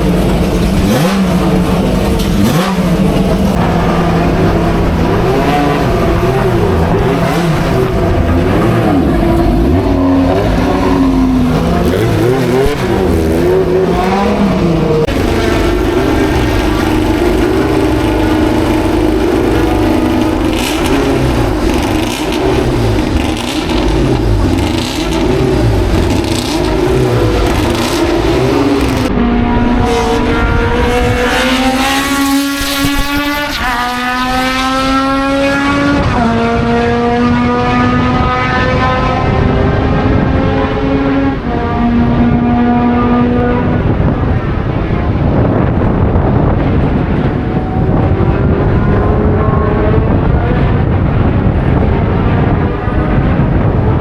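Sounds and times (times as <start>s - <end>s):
loud rushing noise: 0.0s - 54.0s
racing car engines revving: 0.0s - 54.0s.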